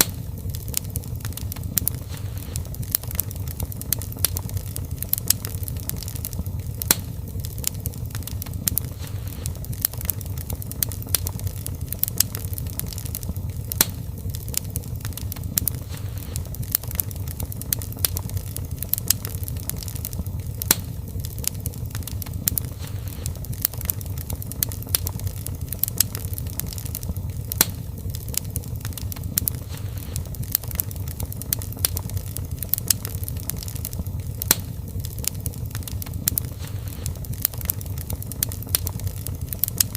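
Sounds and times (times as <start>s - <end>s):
low rumble of flames: 0.0s - 39.9s
wood fire crackling: 0.0s - 39.9s.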